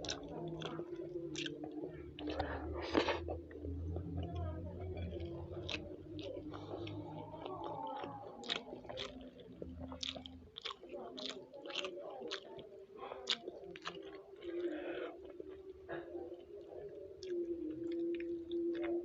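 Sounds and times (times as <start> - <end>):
close chewing of food: 0.0 - 19.0.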